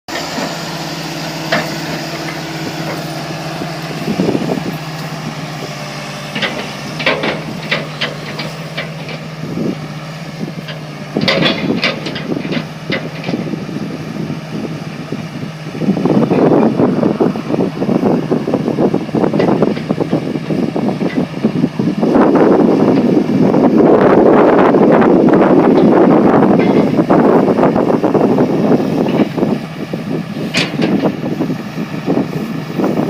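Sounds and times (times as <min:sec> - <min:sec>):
excavator diesel engine running: 0:00.1 - 0:33.0
metal clanks and knocks: 0:06.3 - 0:09.2, 0:10.7 - 0:13.5, 0:26.6 - 0:27.0, 0:30.5 - 0:31.2.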